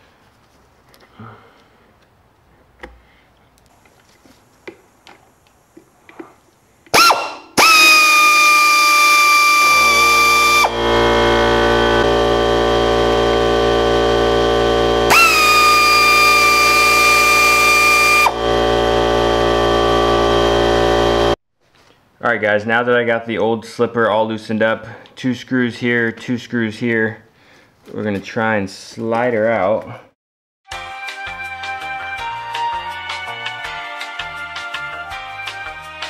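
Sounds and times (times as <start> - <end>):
synthesizer music with bass: 9.7 - 21.4.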